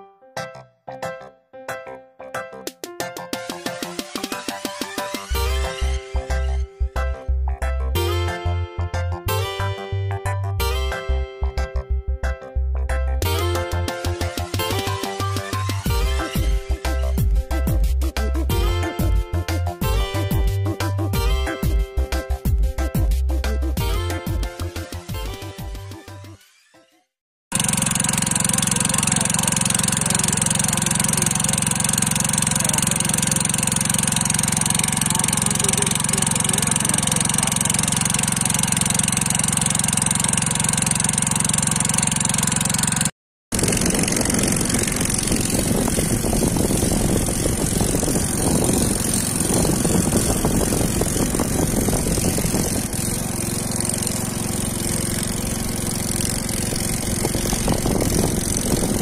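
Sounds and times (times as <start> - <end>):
engine humming: 27.6 - 59.0.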